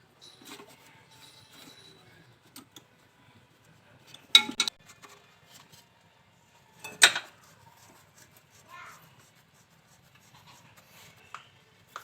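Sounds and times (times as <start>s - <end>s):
metal tools clinking: 0.2s - 2.3s.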